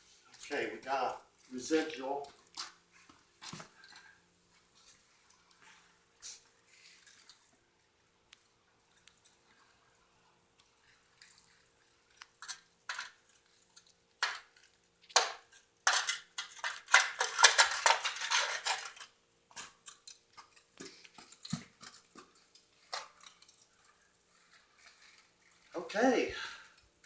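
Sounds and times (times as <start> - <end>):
metal tools clinking: 15.9 - 19.1.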